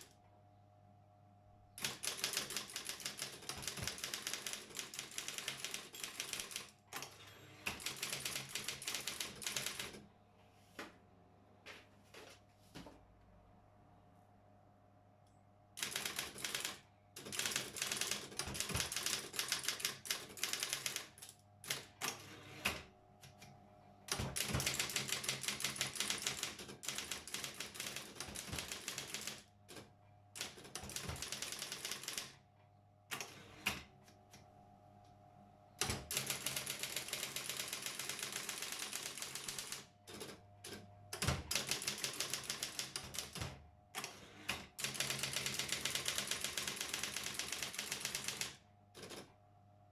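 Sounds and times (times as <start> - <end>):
electric typewriter key strikes: 1.8 - 7.1, 15.8 - 22.2, 24.1 - 29.4, 30.4 - 32.3, 35.8 - 40.3, 41.1 - 49.3
typewriter motor hum: 1.8 - 10.0, 15.8 - 22.9, 24.1 - 32.4, 35.8 - 49.3.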